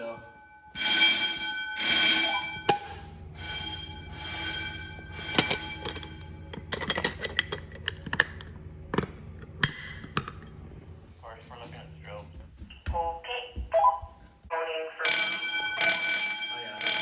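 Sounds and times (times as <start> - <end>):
fire alarm bell ringing: 0.0 - 7.7, 15.0 - 17.0
steady low hum: 0.0 - 17.0.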